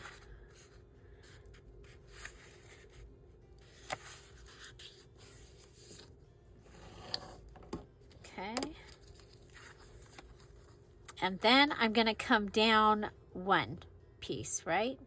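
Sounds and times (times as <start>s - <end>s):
fingers rubbing paper fold: 3.6s - 6.1s.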